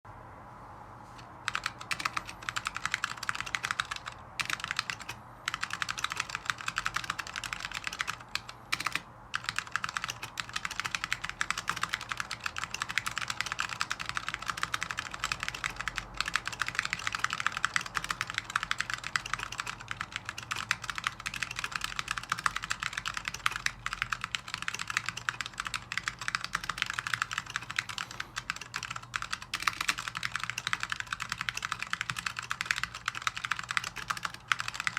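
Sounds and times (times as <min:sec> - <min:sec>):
mechanical keyboard typing: 0:01.4 - 0:34.9.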